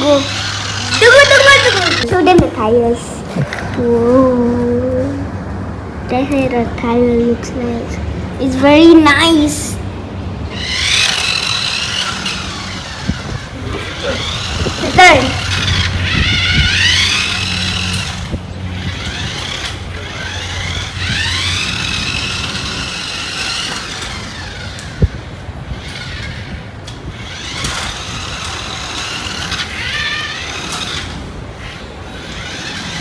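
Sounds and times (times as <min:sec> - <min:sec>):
toy car motor whining: 0:00.0 - 0:02.4, 0:10.4 - 0:33.0.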